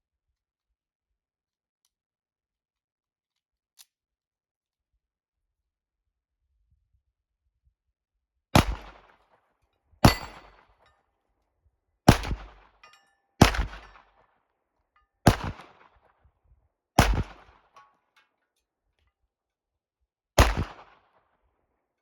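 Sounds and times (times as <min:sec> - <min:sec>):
pistol shots echoing: 0:08.6 - 0:09.1, 0:10.0 - 0:10.6, 0:12.1 - 0:12.8, 0:13.4 - 0:14.1, 0:15.3 - 0:15.8, 0:17.0 - 0:17.6, 0:20.4 - 0:20.9.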